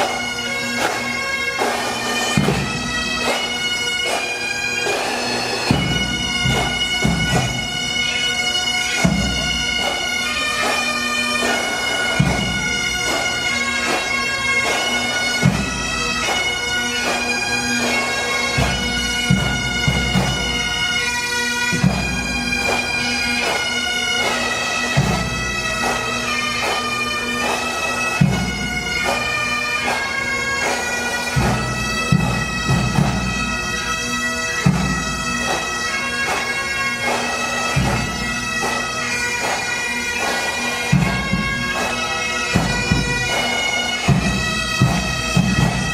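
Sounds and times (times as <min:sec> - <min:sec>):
bagpipe melody over drone: 0:00.0 - 0:45.9
drum beats: 0:01.6 - 0:07.9, 0:09.0 - 0:10.8, 0:11.4 - 0:14.8, 0:15.4 - 0:17.2, 0:21.7 - 0:23.6, 0:24.2 - 0:26.0, 0:31.4 - 0:33.7, 0:34.6 - 0:38.8, 0:39.4 - 0:41.9, 0:42.5 - 0:45.9.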